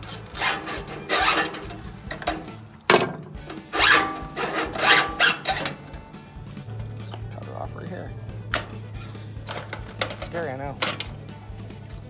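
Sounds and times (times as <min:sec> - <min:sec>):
choke cable rasping and rubbing: 0:00.0 - 0:12.0.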